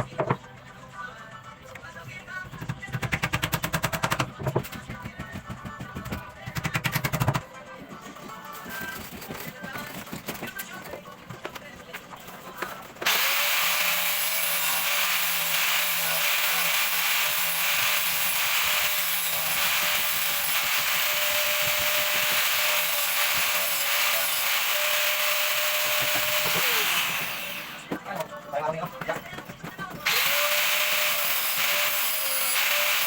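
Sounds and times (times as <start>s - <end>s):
power tool grinding: 13.0s - 28.2s, 30.0s - 33.0s.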